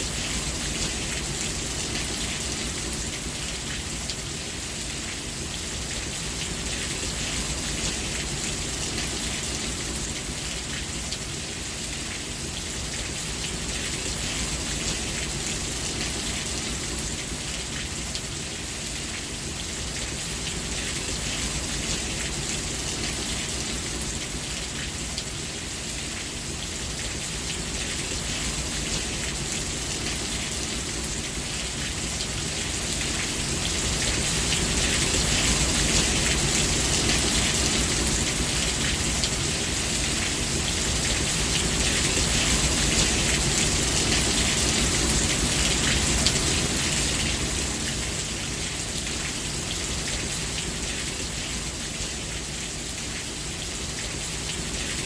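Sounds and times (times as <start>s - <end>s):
heavy rain pattering: 31.0s - 52.2s.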